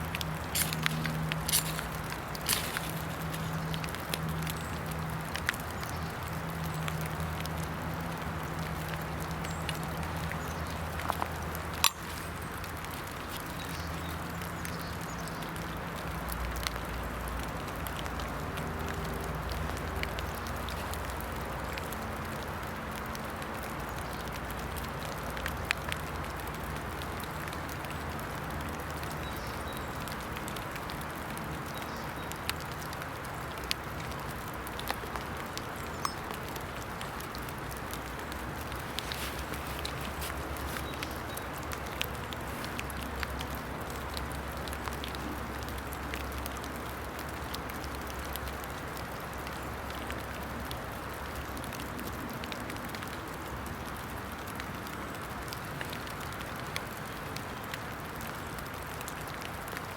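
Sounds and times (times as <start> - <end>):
faint clicks: 23.9 - 50.8.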